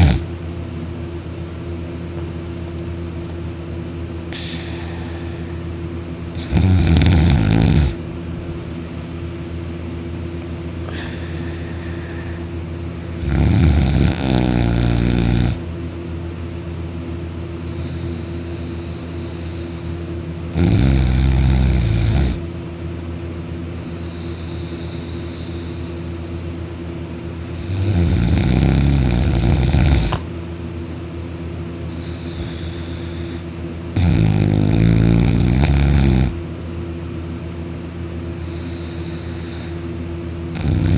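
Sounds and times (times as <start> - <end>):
loud deep snoring: 0.0 - 0.3, 6.3 - 8.0, 13.2 - 15.7, 17.7 - 22.5, 27.6 - 30.3, 31.9 - 36.4, 40.5 - 40.9
steady background hum: 0.0 - 40.9.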